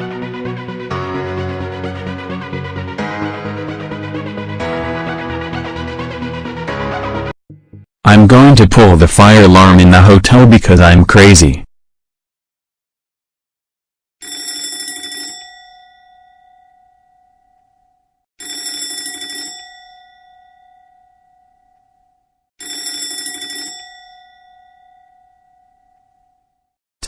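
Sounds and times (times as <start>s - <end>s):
fire alarm bell ringing: 14.2s - 22.0s, 22.6s - 26.5s.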